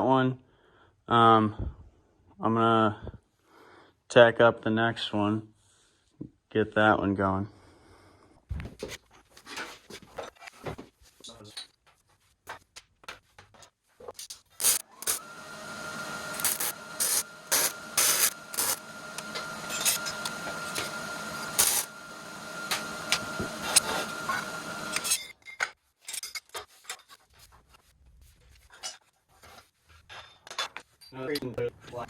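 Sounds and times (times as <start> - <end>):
welding arc crackling and popping: 14.6 - 15.2, 16.3 - 22.0, 22.6 - 25.0.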